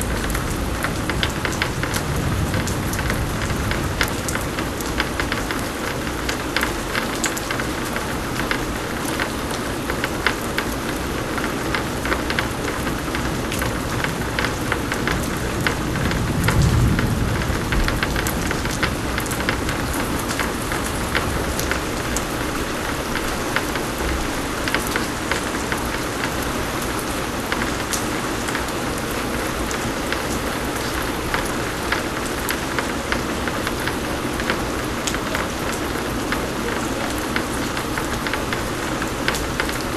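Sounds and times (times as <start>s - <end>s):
low rumble of thunder: 0.0s - 7.3s, 13.5s - 24.6s
heavy rain: 0.0s - 39.9s.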